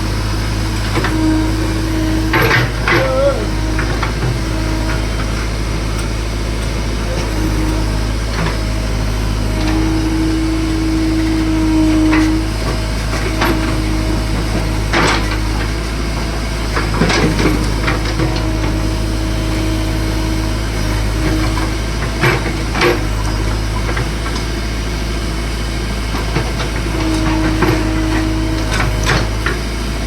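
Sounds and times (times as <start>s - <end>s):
excavator diesel engine running: 0.0s - 30.0s.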